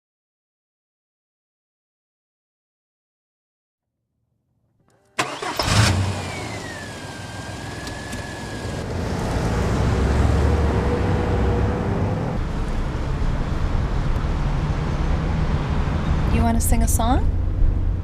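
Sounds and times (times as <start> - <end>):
car engine starting burst: 5.2 - 12.3
engine and road rumble: 5.2 - 18.0.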